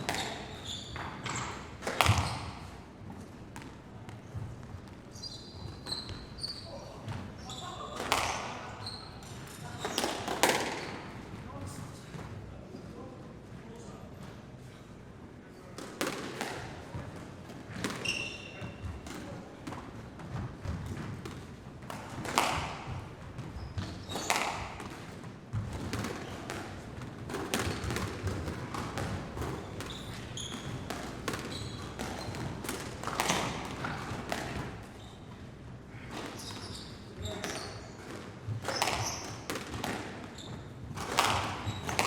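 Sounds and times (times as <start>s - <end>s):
balls bouncing on hard floor: 0.0s - 11.0s, 15.8s - 42.0s
short high squeaks: 5.1s - 6.8s, 18.0s - 18.7s, 36.4s - 37.9s.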